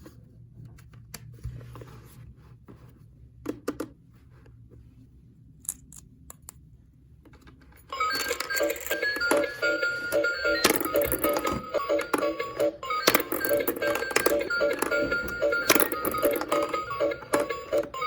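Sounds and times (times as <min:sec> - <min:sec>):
bright chiming music: 0:08.0 - 0:18.0
plastic toy pieces clicking: 0:10.5 - 0:17.9.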